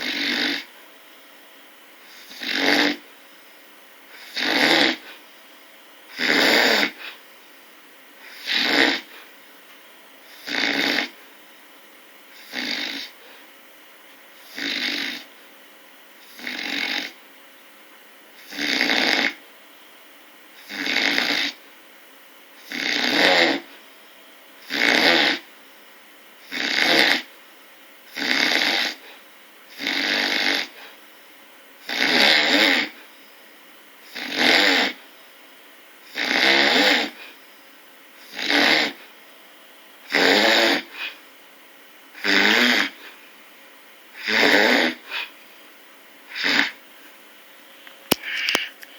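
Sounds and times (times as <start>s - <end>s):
rasping snores: 0.0s - 0.7s, 2.0s - 3.0s, 4.1s - 5.2s, 6.1s - 7.2s, 8.2s - 9.2s, 10.3s - 11.2s, 12.3s - 13.3s, 14.4s - 15.3s, 16.2s - 17.2s, 18.4s - 19.4s, 20.6s - 21.6s, 22.6s - 23.7s, 24.6s - 25.5s, 26.4s - 27.3s, 28.1s - 29.1s, 29.7s - 30.9s, 31.8s - 33.0s, 34.0s - 35.0s, 36.0s - 37.3s, 38.2s - 39.1s, 40.1s - 41.2s, 42.2s - 43.2s, 44.2s - 45.3s, 46.3s - 46.8s.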